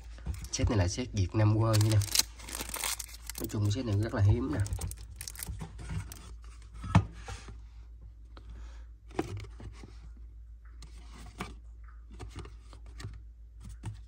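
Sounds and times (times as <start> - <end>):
boxes rustling: 1.7 - 6.4.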